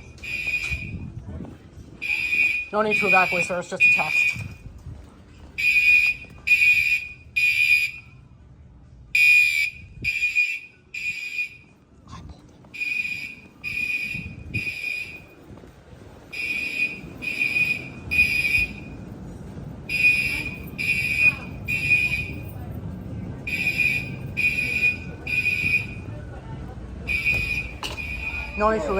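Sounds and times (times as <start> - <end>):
fire alarm horn blasts: 0.0 - 1.1, 2.0 - 4.6, 5.6 - 8.1, 9.2 - 11.8, 12.8 - 15.4, 16.3 - 19.1, 19.8 - 22.6, 23.4 - 26.1, 27.0 - 28.9.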